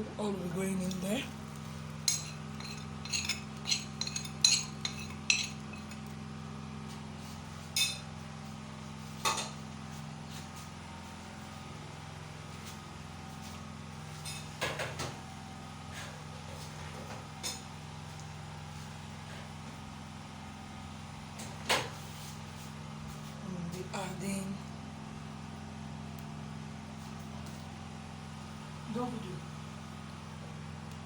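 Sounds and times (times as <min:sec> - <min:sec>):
steady low hum: 0:00.0 - 0:31.0
metal spoon clinking on dishes: 0:02.0 - 0:06.0.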